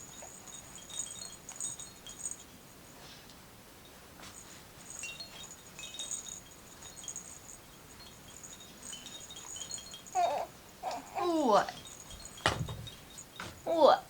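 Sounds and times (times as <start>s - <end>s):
high-pitched chiming pings: 4.9s - 13.4s.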